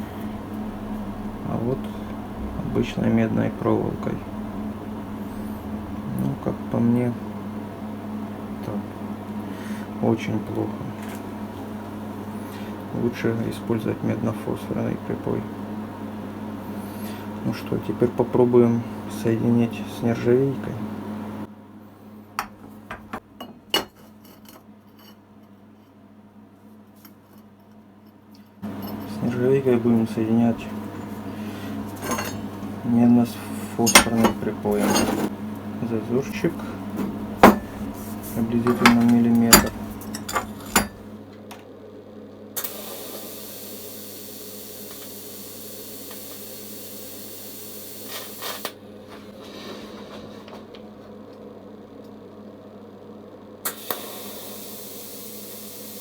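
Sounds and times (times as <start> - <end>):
welding machine hum: 0.0 - 6.6, 30.6 - 41.2
faint steady hum: 0.0 - 56.0
welding arc hissing: 42.7 - 48.7, 53.7 - 56.0.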